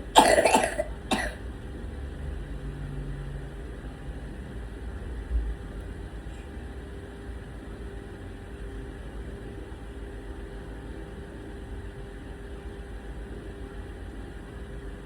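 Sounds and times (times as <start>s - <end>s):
background hum and hiss: 0.0s - 15.0s.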